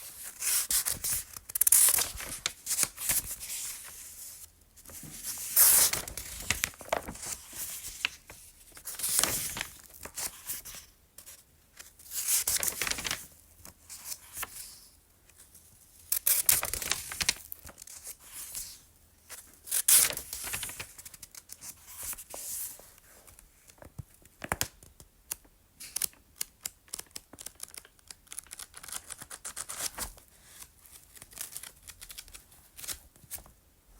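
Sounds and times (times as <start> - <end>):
book pages turning: 0.2 - 10.8, 12.2 - 13.3, 16.4 - 18.7, 25.9 - 33.5.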